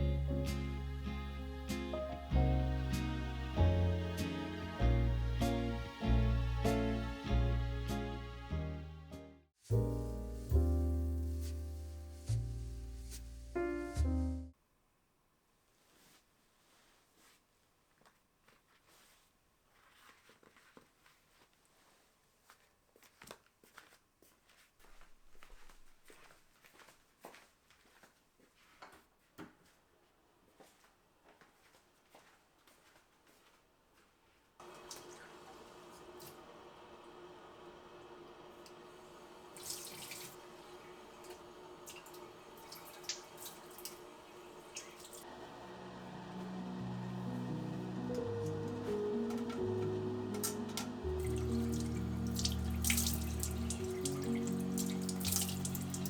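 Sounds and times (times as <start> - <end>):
kitchen tap running into sink: 34.6 - 45.2, 48.4 - 56.0.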